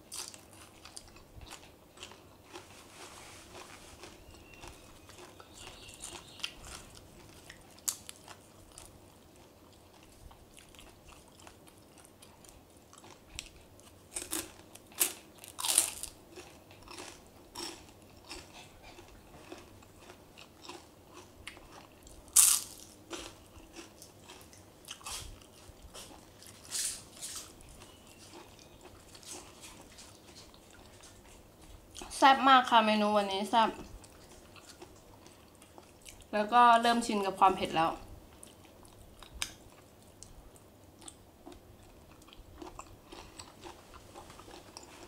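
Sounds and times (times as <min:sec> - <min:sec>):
quiet chewing: 0:00.1 - 0:32.2, 0:33.8 - 0:36.3, 0:38.3 - 0:45.0
crunchy food bites: 0:14.1 - 0:18.5, 0:19.4 - 0:25.3.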